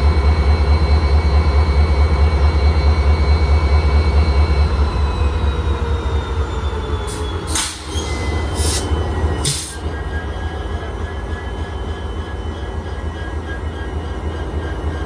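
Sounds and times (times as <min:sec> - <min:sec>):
locomotive diesel engine drone: 0:00.0 - 0:15.0
air hisses: 0:07.1 - 0:09.8
thin high whine: 0:07.1 - 0:10.2.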